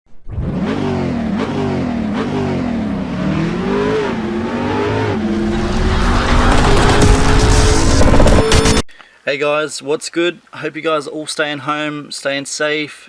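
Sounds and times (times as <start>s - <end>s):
car engine revving: 0.2s - 8.8s.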